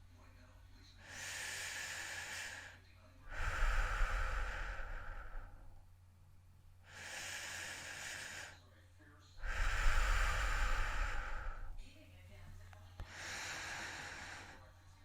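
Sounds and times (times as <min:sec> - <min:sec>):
person breathing heavily: 0:01.0 - 0:05.8, 0:06.8 - 0:08.7, 0:09.4 - 0:11.9, 0:13.0 - 0:14.9.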